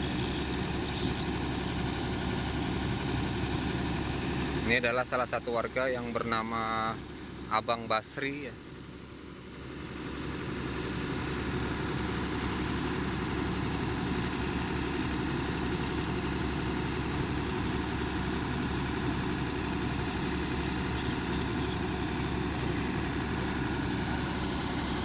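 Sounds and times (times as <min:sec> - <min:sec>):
engine running steadily: 0:00.0 - 0:25.0.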